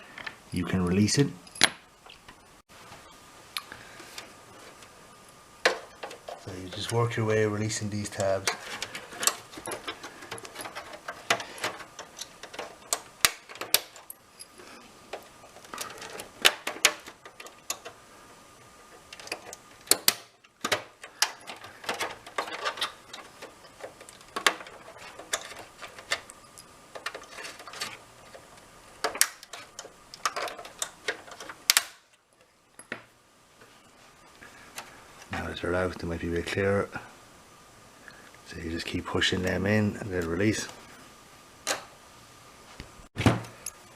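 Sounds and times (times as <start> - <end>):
plastic latches clicking and snapping: 29.0 - 32.0.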